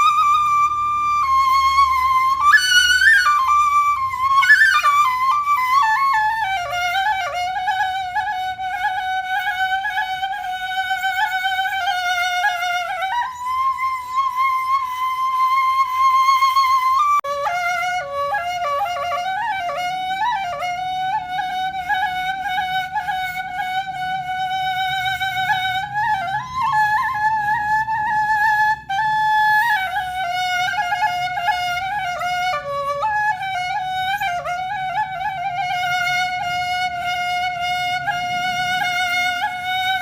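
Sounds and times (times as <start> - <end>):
flute playing slow melody: 0.0 - 40.0.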